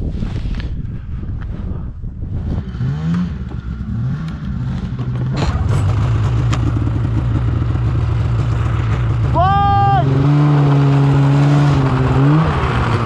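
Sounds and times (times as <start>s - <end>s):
small gasoline engine revving: 5.4s - 13.0s.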